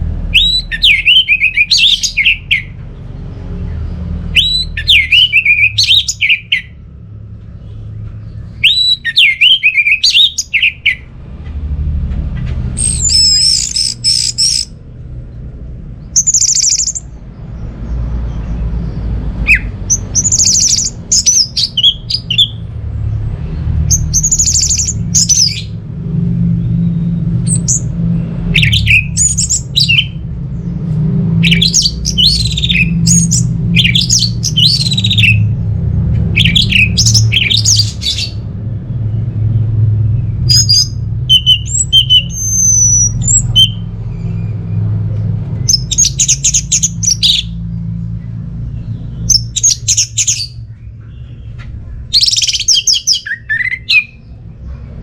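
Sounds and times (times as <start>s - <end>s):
thrush singing: 0.0s - 2.9s, 4.0s - 7.0s, 8.5s - 11.1s, 18.7s - 30.5s, 31.1s - 38.6s, 39.4s - 54.4s
steady low hum: 0.0s - 4.9s.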